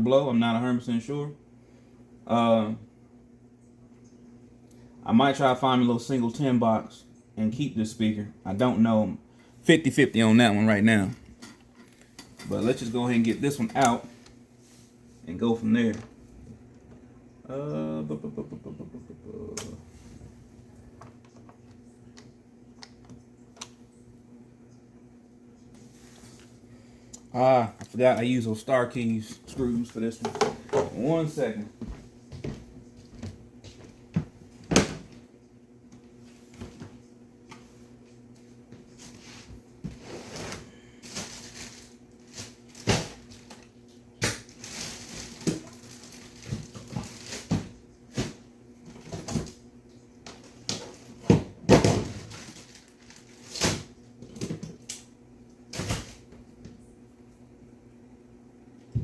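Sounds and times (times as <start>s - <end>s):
steady low hum: 0.0s - 59.0s
objects knocking and rustling: 30.2s - 31.0s.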